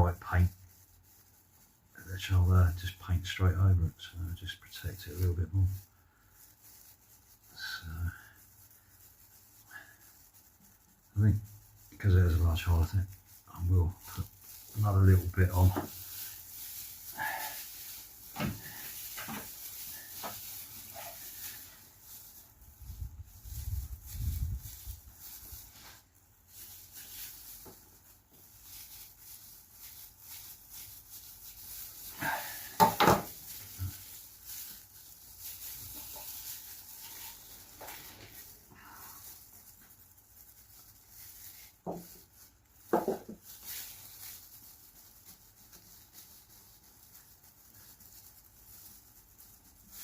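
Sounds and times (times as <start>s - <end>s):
handling and rubbing sounds: 0.0s - 50.0s.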